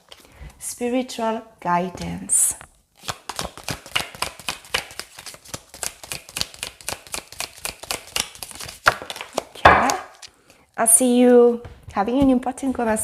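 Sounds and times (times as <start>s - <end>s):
cards being shuffled: 3.0s - 10.6s.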